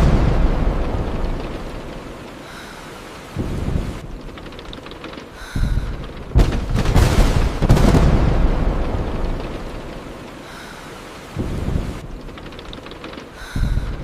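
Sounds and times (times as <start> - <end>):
steady rain: 0.0 - 14.0
thunderclap: 0.0 - 14.0.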